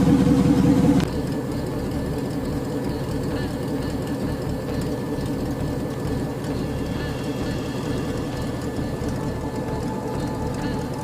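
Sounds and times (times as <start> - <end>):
car engine idling: 0.0 - 11.0.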